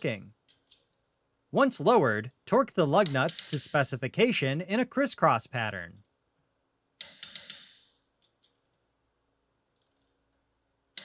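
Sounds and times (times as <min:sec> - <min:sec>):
torque wrench clicking: 0:07.0 - 0:08.6.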